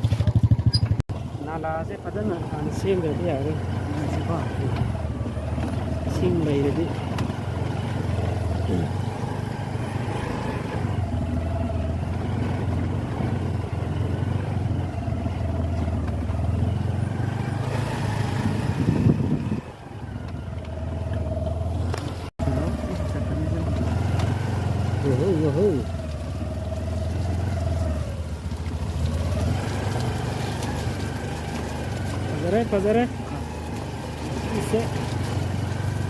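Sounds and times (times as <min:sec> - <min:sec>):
road noise: 0:00.0 - 0:36.0
vehicle engine running: 0:00.0 - 0:36.0
wind noise: 0:18.4 - 0:19.8.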